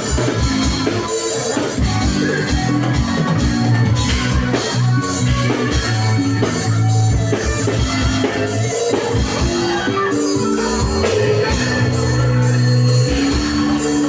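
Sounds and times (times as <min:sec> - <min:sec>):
rock band playing: 0:00.0 - 0:14.0.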